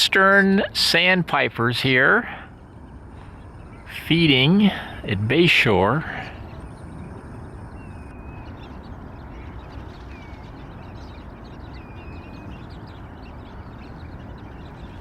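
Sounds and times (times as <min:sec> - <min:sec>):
shorebirds chipping and twittering: 0:00.0 - 0:15.0
wind noise: 0:06.0 - 0:15.0
thin whistled bird notes: 0:06.3 - 0:15.0.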